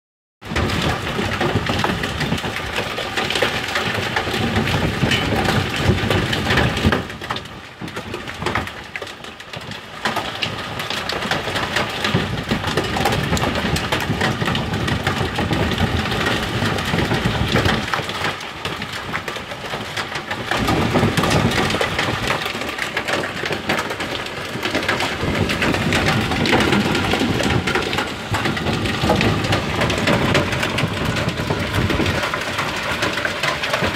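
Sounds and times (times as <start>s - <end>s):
hail pelting hard surfaces: 0.4s - 33.9s.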